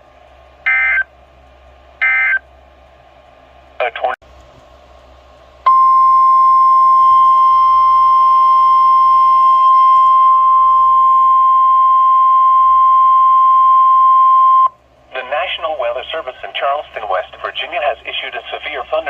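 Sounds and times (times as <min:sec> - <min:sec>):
loud steady alarm tone: 0:00.7 - 0:01.1, 0:02.0 - 0:02.4, 0:05.7 - 0:14.7.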